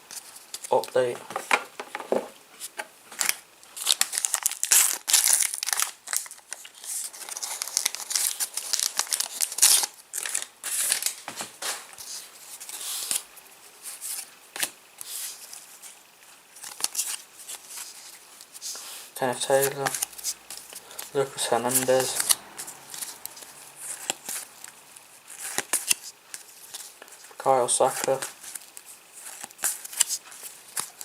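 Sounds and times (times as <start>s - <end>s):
wrapper crinkling: 2.7s - 13.2s, 13.9s - 31.0s
foil packet tearing: 3.2s - 11.2s, 19.4s - 31.0s.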